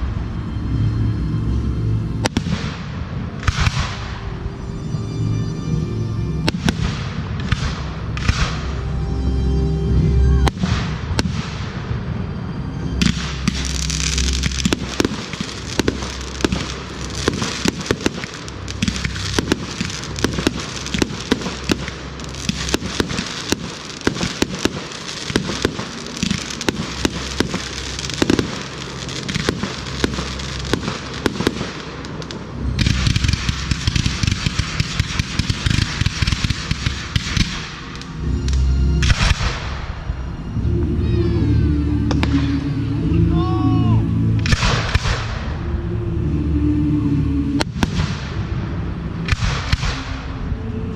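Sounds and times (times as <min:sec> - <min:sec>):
music: 0:00.0 - 0:50.9
fireworks bangs and crackles: 0:02.2 - 0:04.4, 0:06.4 - 0:08.8, 0:10.4 - 0:12.3, 0:13.0 - 0:40.2, 0:44.4 - 0:45.6, 0:47.6 - 0:50.6.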